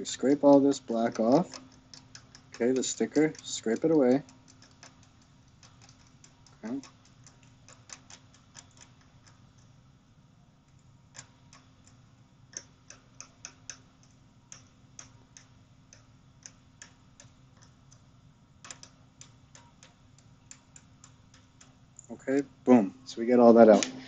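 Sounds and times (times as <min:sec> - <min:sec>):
low steady hum: 0:00.0 - 0:24.0
tool scraping circuit board: 0:00.2 - 0:09.2.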